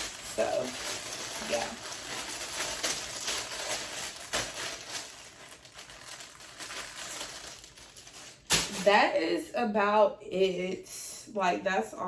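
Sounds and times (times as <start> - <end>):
rustling handling noise: 0.0 - 9.2.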